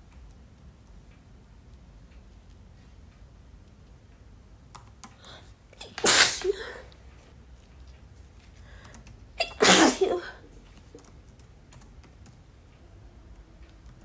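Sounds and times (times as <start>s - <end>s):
woman sneezing: 5.8s - 6.8s, 9.4s - 10.4s.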